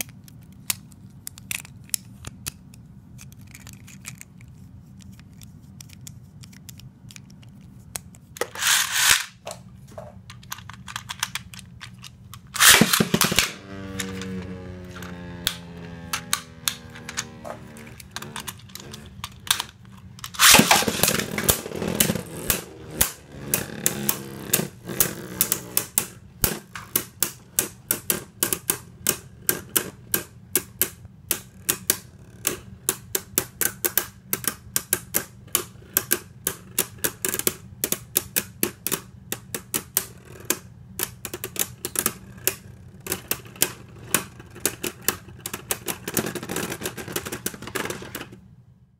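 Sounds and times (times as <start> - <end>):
spinning tops clashing clicks: 8.4 - 9.4, 10.4 - 24.7
spinning top launch rush: 12.6 - 14.3.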